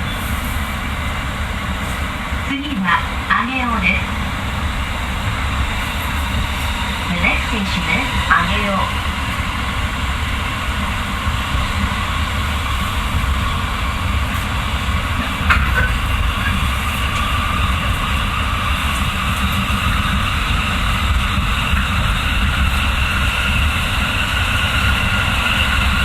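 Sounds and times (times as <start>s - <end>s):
train wheels rumbling on rails: 0.0s - 26.0s.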